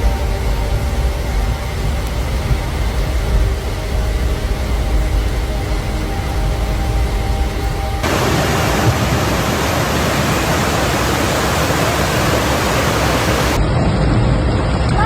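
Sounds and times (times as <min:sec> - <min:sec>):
floodwater rushing: 0:00.0 - 0:14.8.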